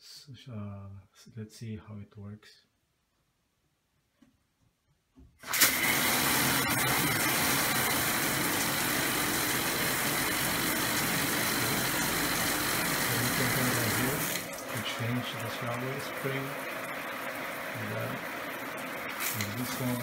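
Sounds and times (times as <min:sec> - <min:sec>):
water spraying from shower head: 0:05.4 - 0:20.0.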